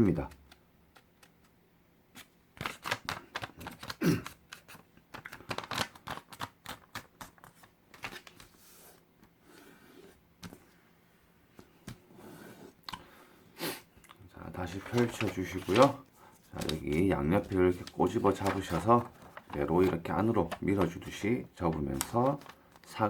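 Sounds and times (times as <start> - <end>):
paper rustling and crackling: 2.2 - 9.0, 14.6 - 23.0.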